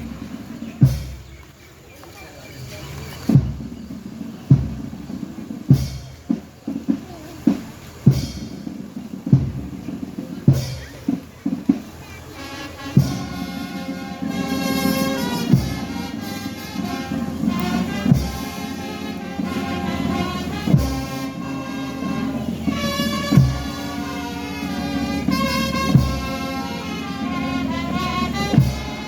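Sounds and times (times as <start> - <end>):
sustained brass instruments: 0.0 - 1.2, 3.2 - 29.0
slow heavy drum beats: 0.0 - 29.0.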